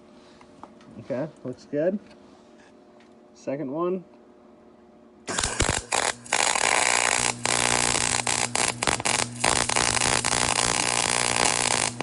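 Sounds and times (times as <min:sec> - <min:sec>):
welder low hum: 0:05.2 - 0:12.0
welding arc sizzle: 0:05.3 - 0:12.0.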